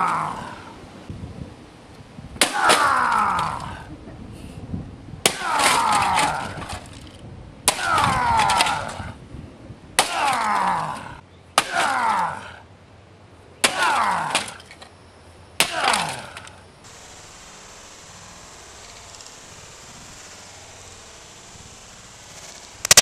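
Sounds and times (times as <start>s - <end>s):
faint steady hiss: 16.2s - 23.0s
plastic cracking and rattling: 22.3s - 23.0s.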